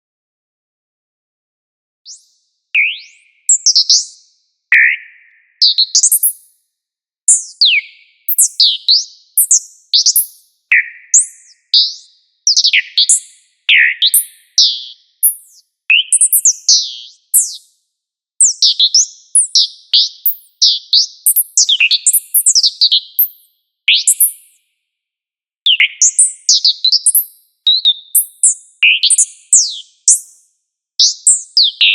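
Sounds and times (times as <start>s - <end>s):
synthesized robot-bird chirps: 4.8s - 6.5s, 7.3s - 17.6s, 18.6s - 24.5s, 25.7s - 30.3s.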